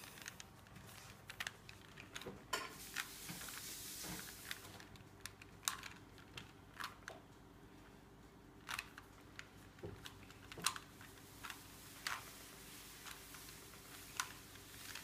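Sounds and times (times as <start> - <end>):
puzzle cube plastic clicks: 4.2 - 7.2, 8.6 - 15.0.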